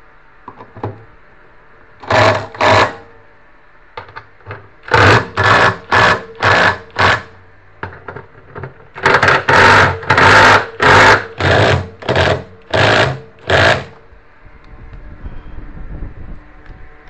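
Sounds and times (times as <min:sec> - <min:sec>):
rhythmic scraping strokes: 0:04.8 - 0:07.4, 0:09.0 - 0:14.0.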